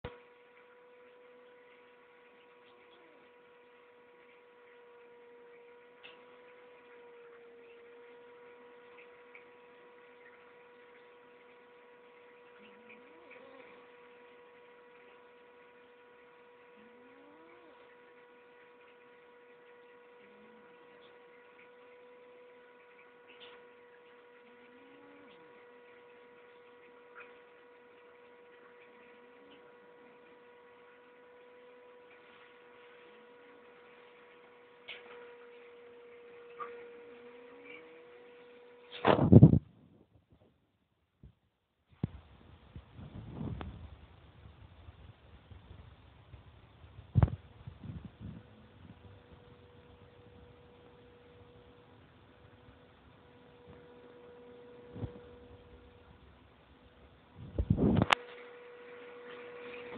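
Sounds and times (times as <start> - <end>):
high electrical hum: 0.0 - 59.9
cat snoring: 12.6 - 13.9, 16.8 - 17.9.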